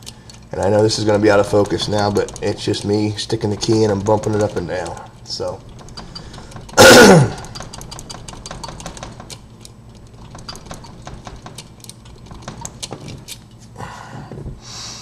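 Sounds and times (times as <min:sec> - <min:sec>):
key clicking in padlock: 0:07.4 - 0:13.4.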